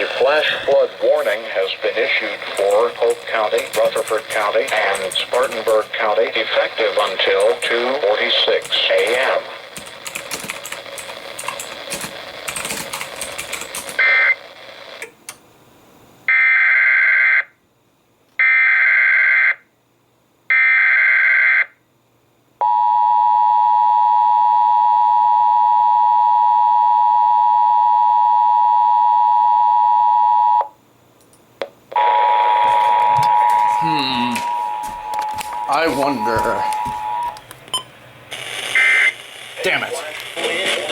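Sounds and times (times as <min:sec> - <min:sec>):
crackling noise: 0:00.0 - 0:15.3, 0:31.6 - 0:40.9.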